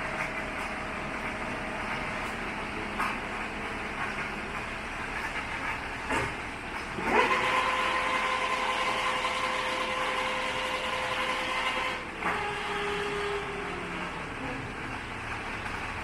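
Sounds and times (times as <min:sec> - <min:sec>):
lathe motor whine: 0:06.9 - 0:14.4.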